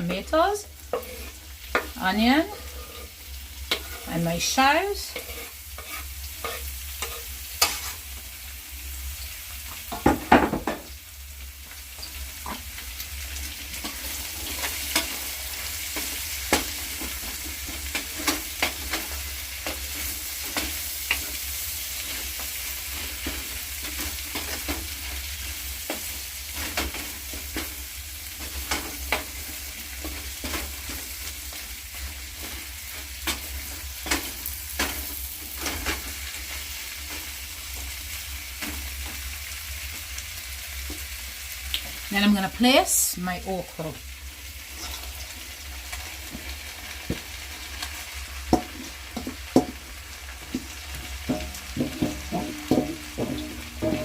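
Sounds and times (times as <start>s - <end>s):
spoon stirring and scraping: 0.0s - 8.0s, 50.4s - 54.0s
chicken sizzling in pot: 0.0s - 54.0s.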